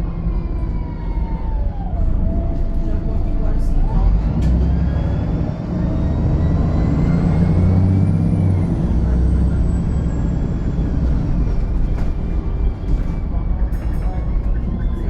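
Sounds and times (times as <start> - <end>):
bus engine rumble with high whine: 0.0 - 15.0.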